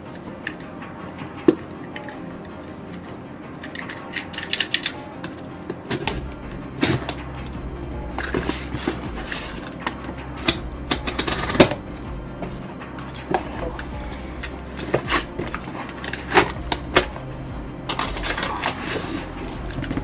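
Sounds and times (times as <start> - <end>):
cardboard cutting and scraping: 13.2 - 20.0.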